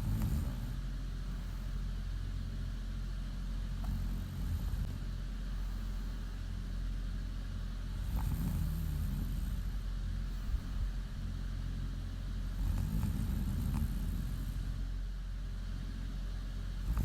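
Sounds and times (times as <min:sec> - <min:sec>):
soft slow breathing swells: 0:00.0 - 0:02.1, 0:03.7 - 0:06.6, 0:08.0 - 0:11.4, 0:12.4 - 0:14.9
steady low hum: 0:00.0 - 0:17.0.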